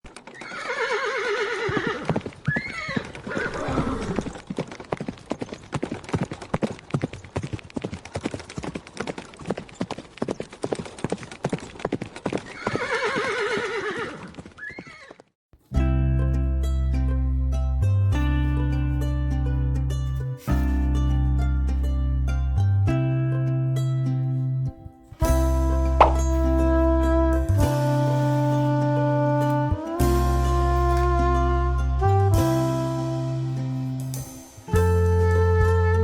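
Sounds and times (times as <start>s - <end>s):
hooves clip-clopping: 0.0s - 15.3s, 25.2s - 26.6s
horse whinnying and snorting: 0.3s - 4.4s, 12.4s - 15.2s
plucked-string music: 15.7s - 36.0s.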